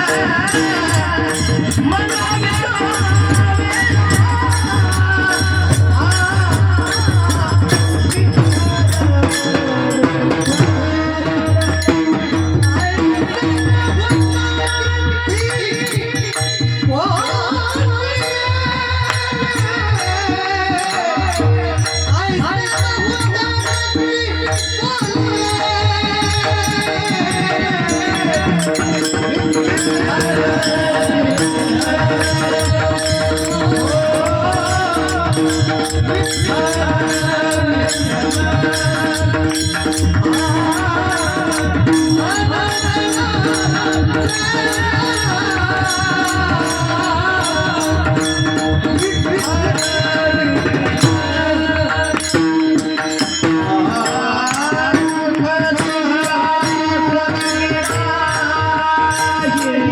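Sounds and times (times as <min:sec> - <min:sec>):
fast mridang drumming: 0:00.0 - 0:59.9
man singing devotional melody: 0:00.0 - 0:59.9
steady held tones: 0:00.0 - 0:59.9.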